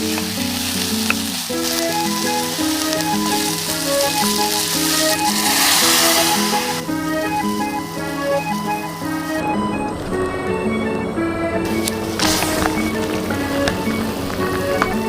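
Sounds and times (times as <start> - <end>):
food sizzling in a pot: 0.0 - 9.4
background music with plucked melody: 0.0 - 15.0.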